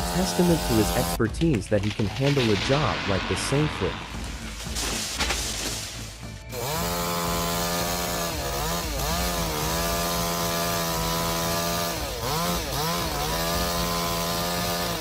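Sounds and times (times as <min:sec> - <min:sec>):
chainsaw cutting at high revs: 0:00.0 - 0:01.2, 0:06.5 - 0:15.0.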